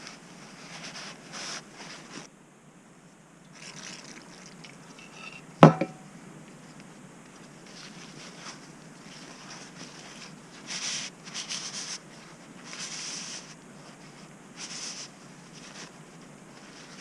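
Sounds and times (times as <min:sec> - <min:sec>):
scrubbing and rubbing strokes: 0:00.4 - 0:02.3, 0:07.6 - 0:17.0.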